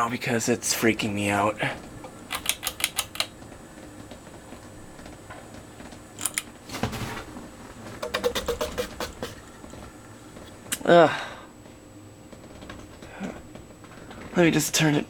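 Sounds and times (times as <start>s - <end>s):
fan pull-chain clicking: 2.0s - 3.4s, 6.2s - 6.5s, 8.0s - 9.4s.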